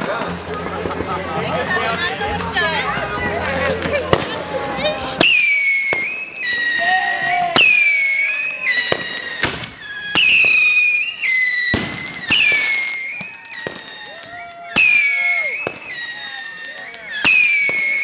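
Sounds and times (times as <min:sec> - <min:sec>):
firework bangs and crackles: 0:00.0 - 0:18.0
whistling fireworks: 0:03.8 - 0:18.0.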